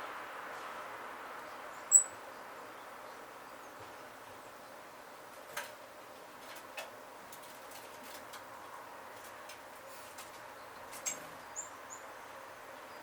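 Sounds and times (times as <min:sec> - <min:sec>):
steady background hiss: 0:00.0 - 0:13.0
bird chirp: 0:01.4 - 0:04.8, 0:10.3 - 0:13.0.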